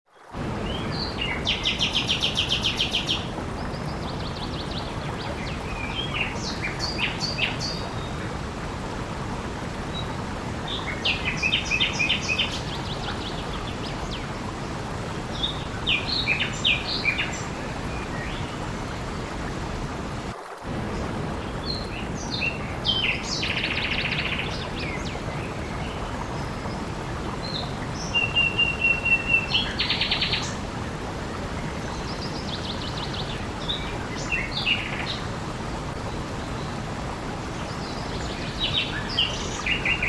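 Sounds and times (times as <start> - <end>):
running water: 0.1 - 40.0
songbirds chirping: 0.2 - 40.0.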